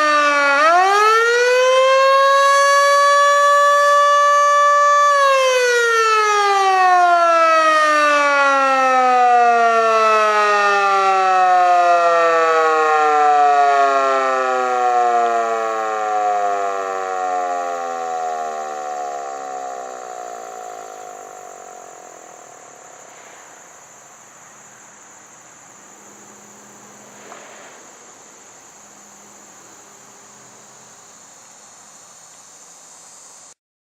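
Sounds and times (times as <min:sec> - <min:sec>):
warning siren winding down: 0:00.0 - 0:23.1
insects buzzing: 0:00.0 - 0:33.6.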